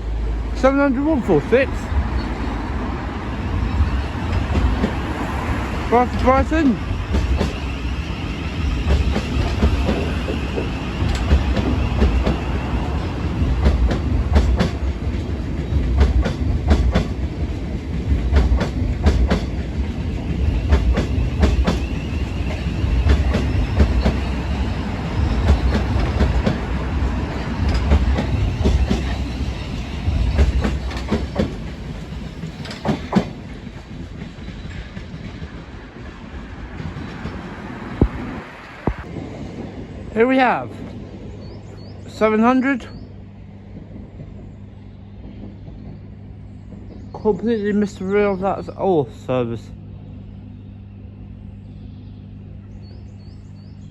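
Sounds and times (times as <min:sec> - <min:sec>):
electric train passing rumble: 0:00.0 - 0:53.9
wheels clicking over rail joints: 0:03.8 - 0:38.9.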